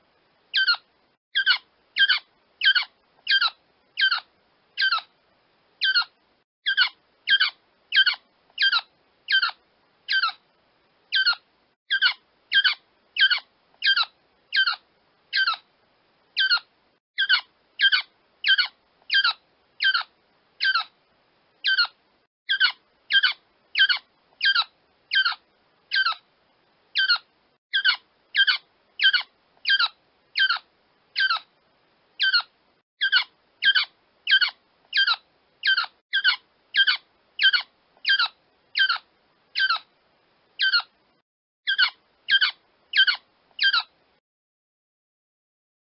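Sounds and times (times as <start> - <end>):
quail calling: 32.2 - 39.0, 41.7 - 43.9.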